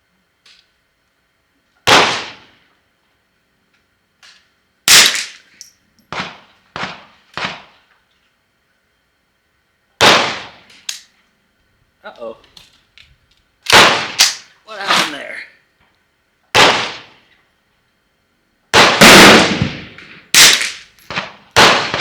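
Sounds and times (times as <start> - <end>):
quieter shots in quick succession: 1.9 - 2.4, 10.0 - 10.6, 13.7 - 15.1, 16.6 - 17.2, 18.8 - 22.0
rifle shots: 1.9 - 2.5, 4.9 - 5.4, 6.1 - 7.8, 10.0 - 10.7, 13.7 - 15.2, 16.6 - 17.2, 18.7 - 22.0.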